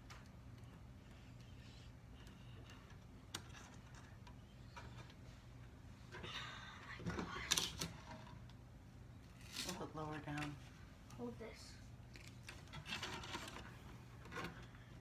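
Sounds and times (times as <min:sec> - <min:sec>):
rustling and scraping: 0:12.0 - 0:15.0.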